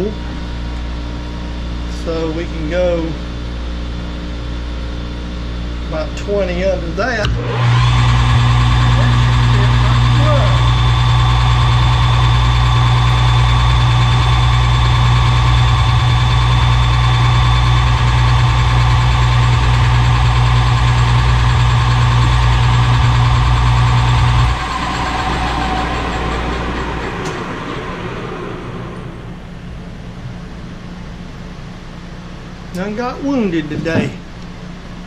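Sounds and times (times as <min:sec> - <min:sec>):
metal lathe motor humming: 0:07.2 - 0:29.7.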